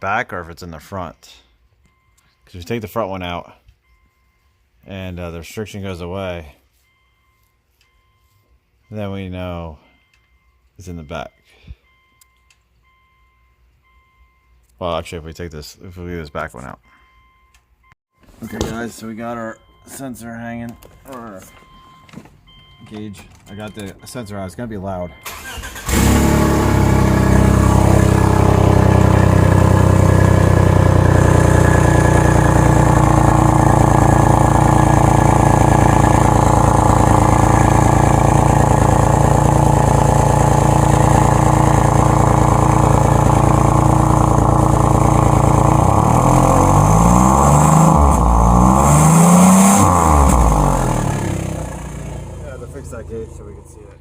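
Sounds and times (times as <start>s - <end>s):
engine revving: 25.2s - 54.0s
car engine running loud: 25.6s - 54.0s.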